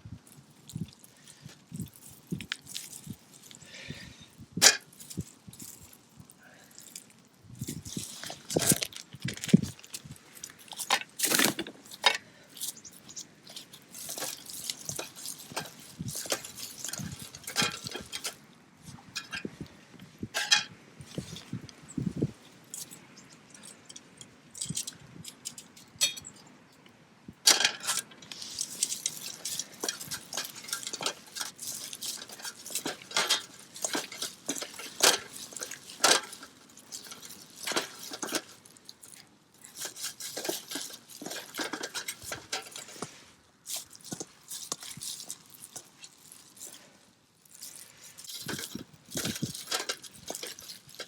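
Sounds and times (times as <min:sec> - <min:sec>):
utensils clinking on metal cookware: 0:13.5 - 0:18.4, 0:20.4 - 0:20.7, 0:27.5 - 0:38.6, 0:39.6 - 0:43.2.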